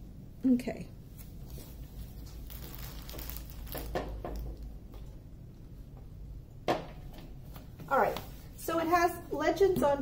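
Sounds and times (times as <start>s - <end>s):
steady low hum: 0.0s - 10.0s
faint rustling handling noises: 1.1s - 5.2s
soft knocks and crinkles: 1.2s - 5.2s.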